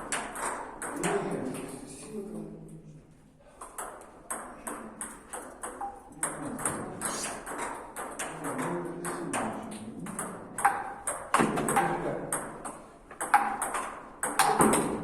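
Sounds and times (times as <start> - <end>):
table tennis ball clicking: 10.1 - 15.0.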